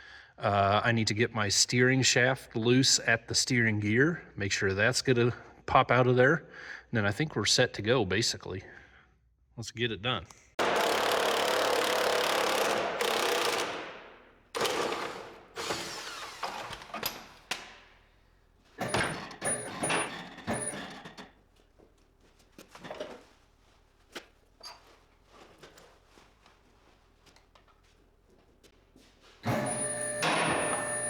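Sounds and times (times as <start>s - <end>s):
power tool bursts: 10.6s - 17.8s, 18.8s - 21.3s, 29.4s - 31.0s
tools and parts clicking: 18.8s - 21.3s.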